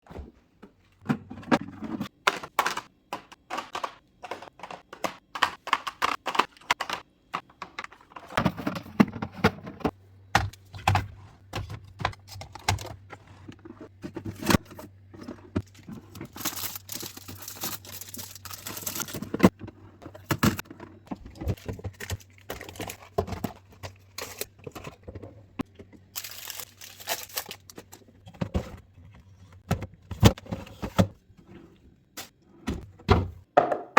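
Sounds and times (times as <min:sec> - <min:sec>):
containers clicking and knocking: 0:01.0 - 0:28.7
plastic packaging crinkling: 0:15.7 - 0:19.2, 0:26.1 - 0:28.2.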